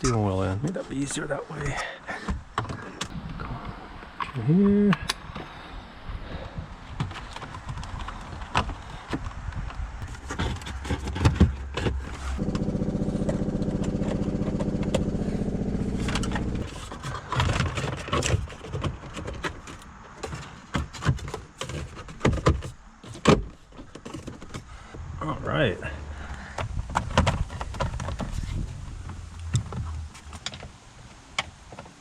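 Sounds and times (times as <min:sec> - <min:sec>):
small motor running: 0:12.4 - 0:16.7.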